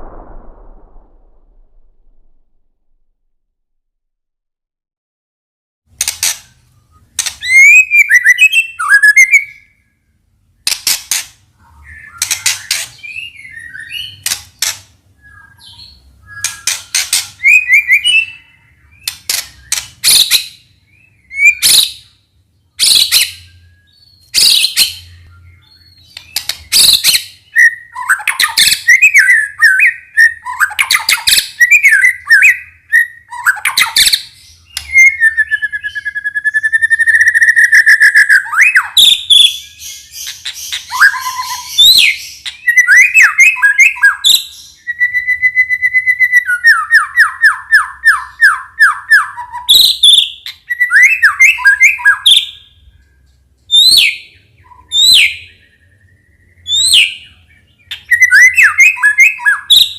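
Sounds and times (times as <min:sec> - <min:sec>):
bird sharp calls: 0:10.6 - 0:22.2, 0:22.8 - 0:52.8.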